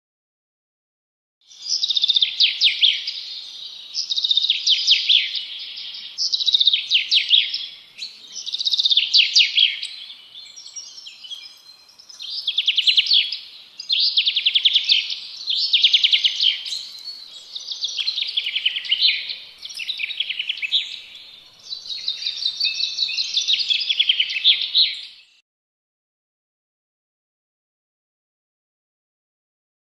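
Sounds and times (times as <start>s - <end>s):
bird singing trilled notes: 1.5s - 25.4s.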